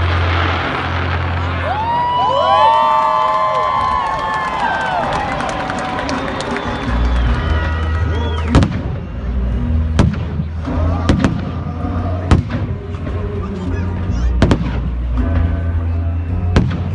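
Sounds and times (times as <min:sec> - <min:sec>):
fireworks bangs: 0:00.0 - 0:02.9, 0:08.4 - 0:09.2, 0:09.8 - 0:13.3, 0:14.4 - 0:15.6
background music: 0:00.0 - 0:16.9.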